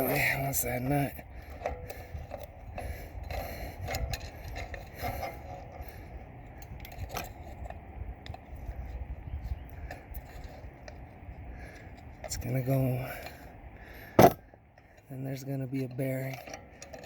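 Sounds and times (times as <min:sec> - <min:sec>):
metallic clinks and scrapes: 0:01.4 - 0:09.0, 0:15.7 - 0:17.0.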